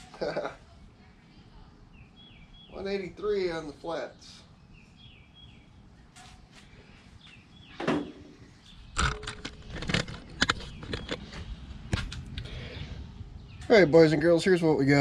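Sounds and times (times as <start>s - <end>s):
faint bird chirps: 0.2s - 3.4s
cooking gear clattering: 9.0s - 11.5s.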